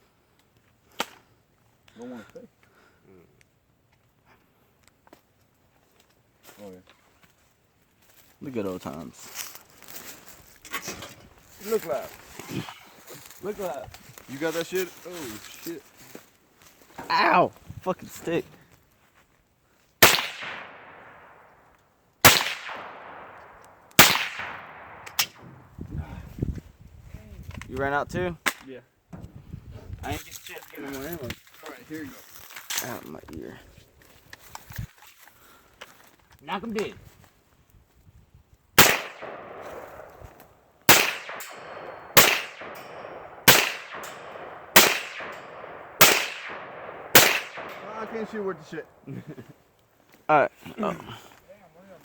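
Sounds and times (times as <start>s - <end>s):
gunshots with echo: 20.0s - 21.6s, 22.2s - 25.7s, 38.8s - 49.0s
small sharp crack: 20.0s - 25.4s, 38.8s - 48.4s.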